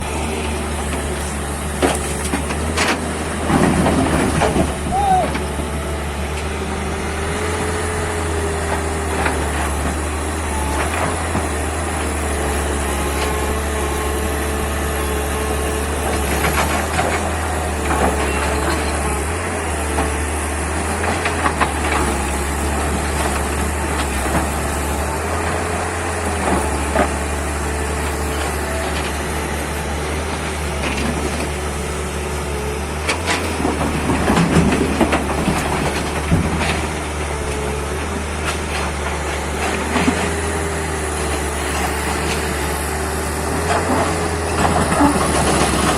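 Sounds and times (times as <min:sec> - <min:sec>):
excavator diesel engine running: 0:00.0 - 0:45.9.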